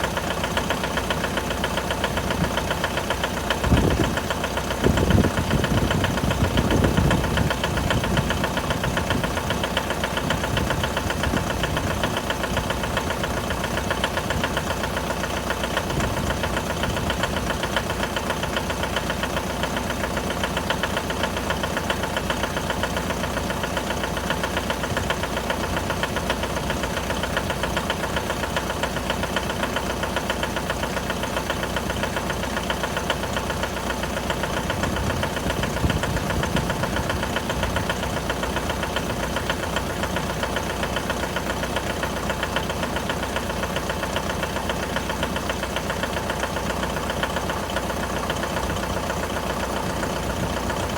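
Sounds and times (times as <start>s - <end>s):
diesel engine idling with knock: 0.0s - 50.9s.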